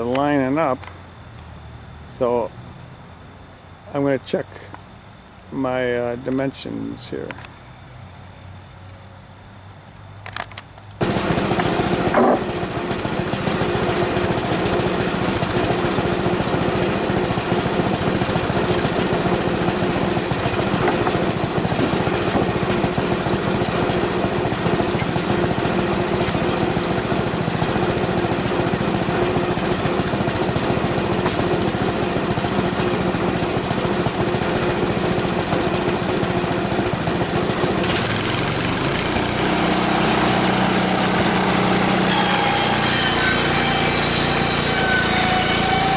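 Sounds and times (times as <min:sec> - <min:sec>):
small gasoline engine running: 0:11.0 - 0:45.9.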